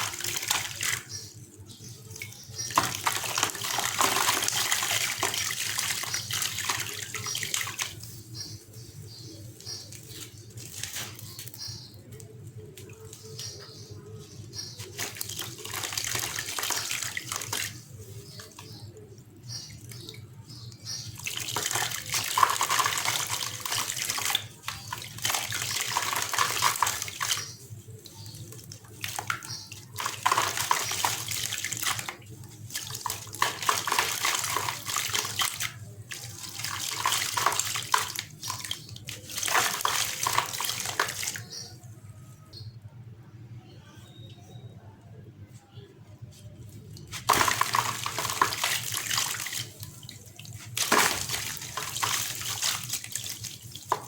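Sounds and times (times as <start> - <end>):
cement crumbling in water: 2.5 - 6.8, 28.8 - 41.6, 47.1 - 54.0.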